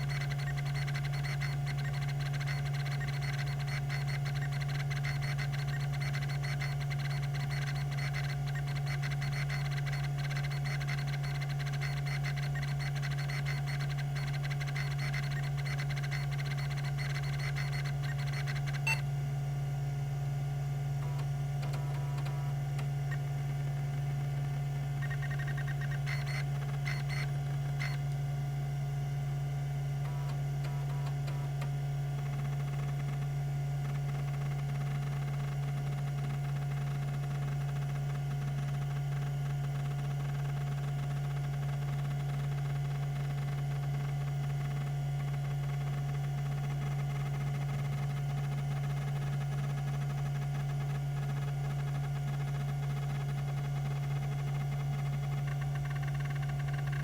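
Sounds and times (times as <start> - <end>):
hard drive head seek ticks: 0.0 - 19.1, 21.0 - 28.3, 30.0 - 57.0
hard drive spindle hum: 0.0 - 57.0.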